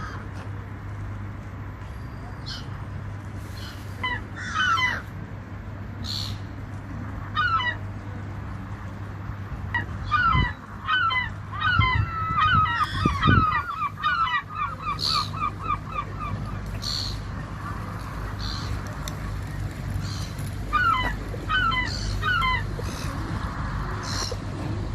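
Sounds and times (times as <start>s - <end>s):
gulls calling: 2.4s - 5.2s, 7.2s - 8.0s, 9.6s - 24.9s.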